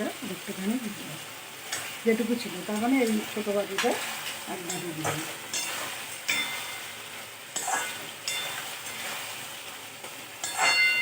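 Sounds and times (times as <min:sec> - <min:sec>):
chicken sizzling in a pan: 0:00.0 - 0:11.0
utensil clinking against pan: 0:04.7 - 0:07.0, 0:07.6 - 0:09.2, 0:10.4 - 0:11.0.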